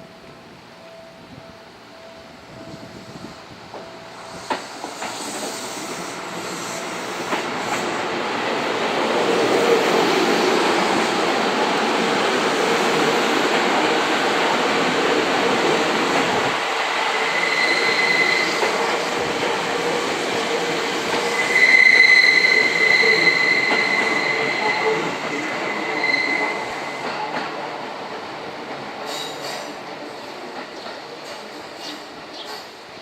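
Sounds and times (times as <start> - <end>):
train rolling past: 0.0 - 33.0
train wheels squealing: 4.0 - 8.0, 17.0 - 19.2, 21.1 - 27.6, 29.0 - 32.8.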